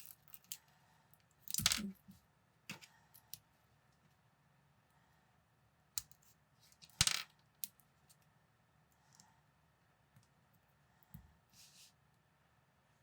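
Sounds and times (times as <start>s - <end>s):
plastic bricks clicking and clattering: 6.9s - 7.3s.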